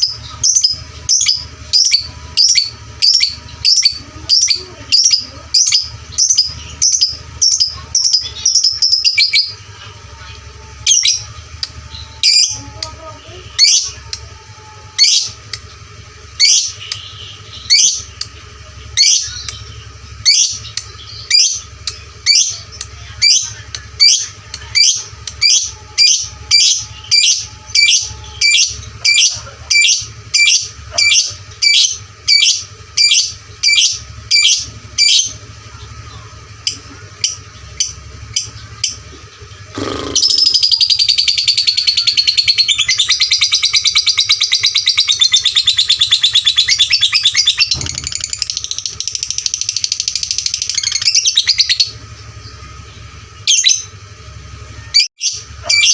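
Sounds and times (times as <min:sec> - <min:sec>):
lovebird chirping: 0:00.0 - 0:09.7
lovebird chattering trill: 0:00.0 - 0:54.2, 0:54.8 - 0:55.9.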